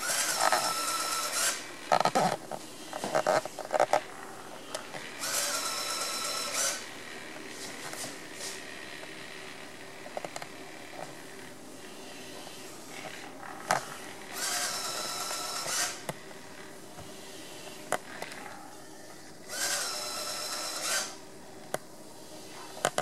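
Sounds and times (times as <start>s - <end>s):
mopping robot humming: 0.0s - 9.5s, 10.7s - 18.7s.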